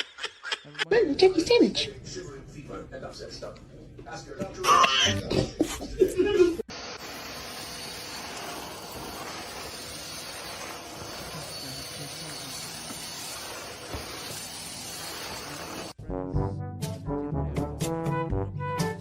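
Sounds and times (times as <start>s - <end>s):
brass music: 16.0s - 19.0s.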